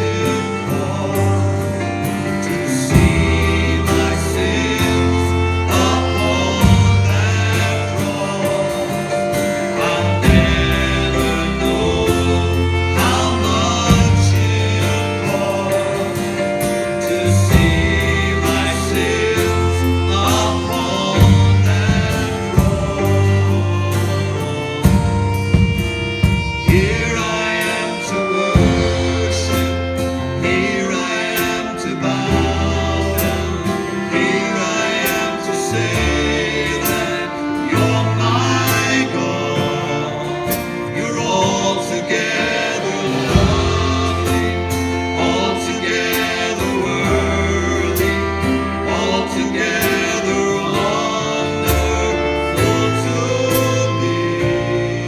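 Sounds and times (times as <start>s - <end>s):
steady drum beat: 0.0s - 30.2s, 43.0s - 45.5s
bass: 0.0s - 55.0s
guitar: 0.0s - 55.0s
person singing: 0.0s - 55.0s.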